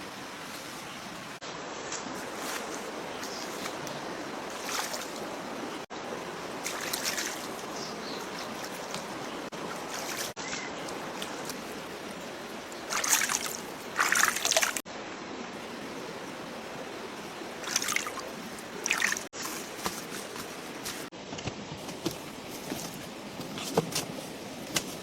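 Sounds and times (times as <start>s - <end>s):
stream water running: 0.0s - 21.1s.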